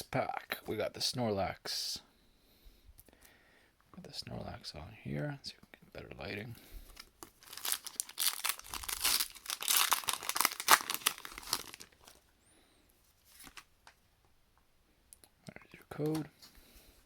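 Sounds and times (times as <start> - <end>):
foil wrapper tearing and crinkling: 6.9 - 12.2
faint rustles of handling: 11.2 - 14.0.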